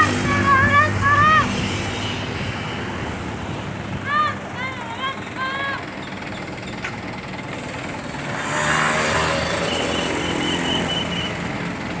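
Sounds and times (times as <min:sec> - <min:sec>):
bus engine running: 0:00.0 - 0:12.0.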